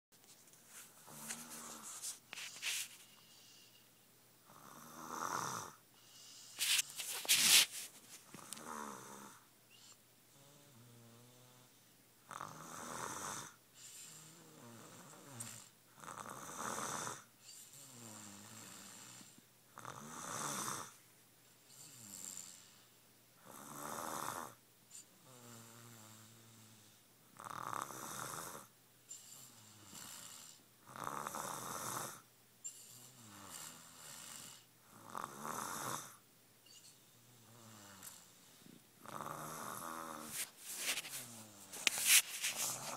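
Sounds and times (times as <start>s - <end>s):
person snoring: 1.0s - 2.0s, 4.5s - 7.7s, 8.3s - 9.4s, 12.3s - 21.0s, 21.7s - 22.8s, 23.4s - 24.6s, 25.2s - 28.7s, 29.3s - 32.2s, 32.9s - 36.2s, 37.3s - 42.9s.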